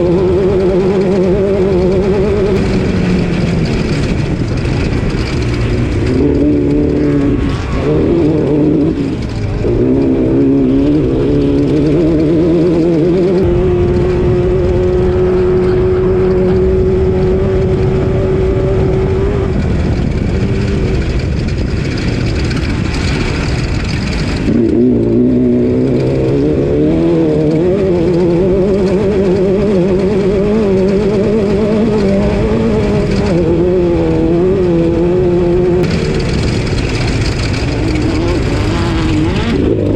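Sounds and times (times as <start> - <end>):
loud noise: 0.0 - 39.9
race car engine running hard: 0.0 - 39.9.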